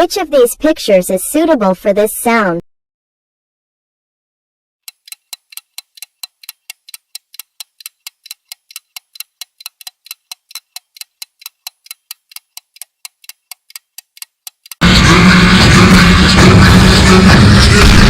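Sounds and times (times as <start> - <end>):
fast clock ticking: 4.8 - 14.9.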